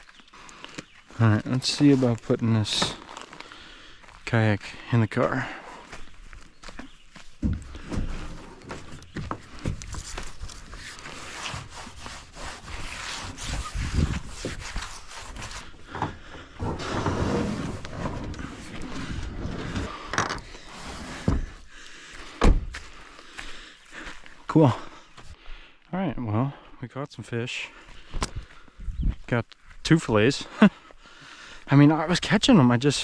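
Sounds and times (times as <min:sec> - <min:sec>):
kayak scraping: 0:07.6 - 0:21.7.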